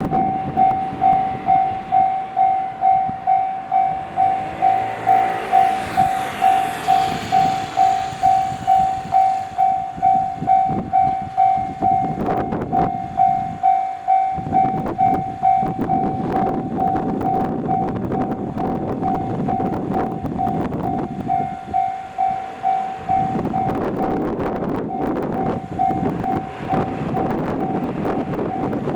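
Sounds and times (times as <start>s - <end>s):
level-crossing warning bell: 0.0s - 28.9s
train passing: 0.0s - 28.9s.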